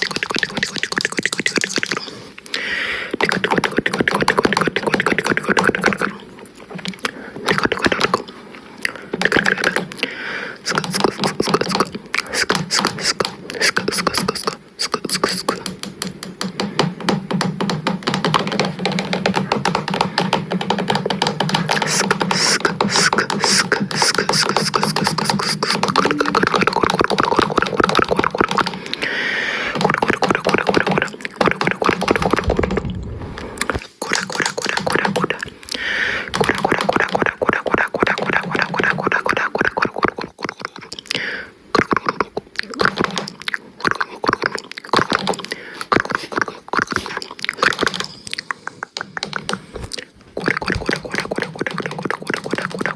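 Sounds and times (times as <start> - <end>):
beatboxing mouth clicks: 0.0 - 52.9
low hum: 32.0 - 34.0.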